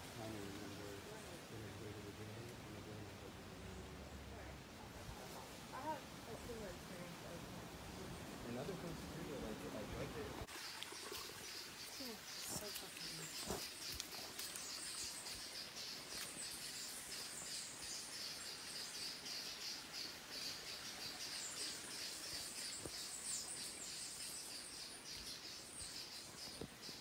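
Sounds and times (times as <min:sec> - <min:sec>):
birds: 0:07.9 - 0:27.0.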